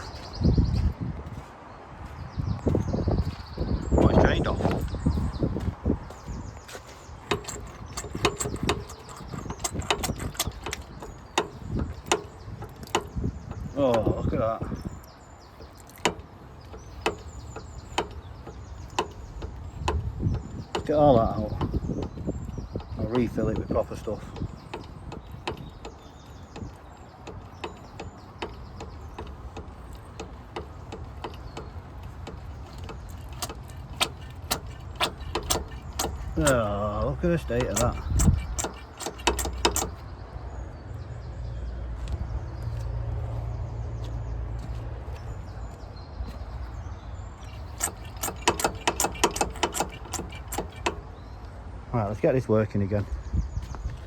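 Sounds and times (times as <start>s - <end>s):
sharp clicks and knocks: 3.3s - 40.2s, 47.4s - 51.6s.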